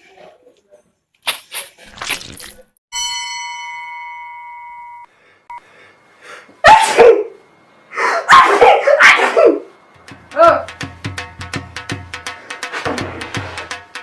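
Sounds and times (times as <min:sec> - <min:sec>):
bell-like ding: 0:02.9 - 0:05.1
person sneezing loudly: 0:06.7 - 0:07.3.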